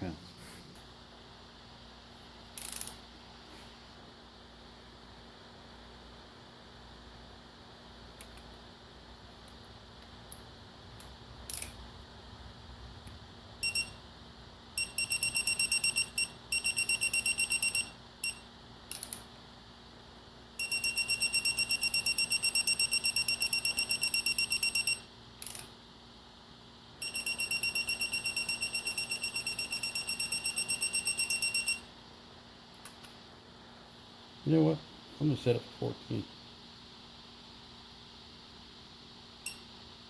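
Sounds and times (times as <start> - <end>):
torque wrench beeping: 14.8 - 19.1, 20.6 - 25.6, 27.0 - 31.8.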